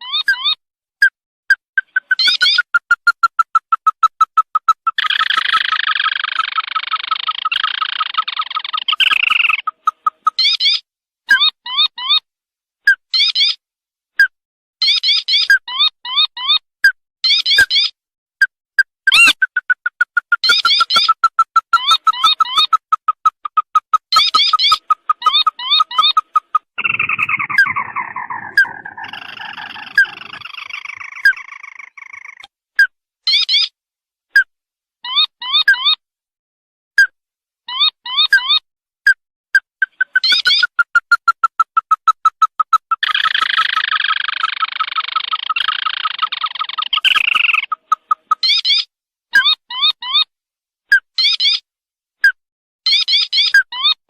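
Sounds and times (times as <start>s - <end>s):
harsh chattering trill: 1.8s - 10.8s, 19.1s - 32.5s, 39.6s - 48.8s
short sharp bird chirps: 1.8s - 10.8s, 19.1s - 32.5s, 39.6s - 48.9s
short pips: 19.1s - 32.5s, 39.6s - 44.6s.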